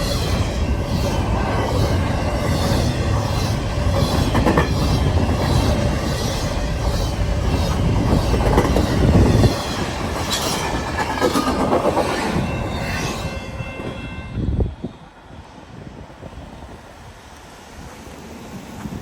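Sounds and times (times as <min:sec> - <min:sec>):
train wheels clattering over rails: 0:00.0 - 0:14.0
steel wheels squealing: 0:00.0 - 0:14.4.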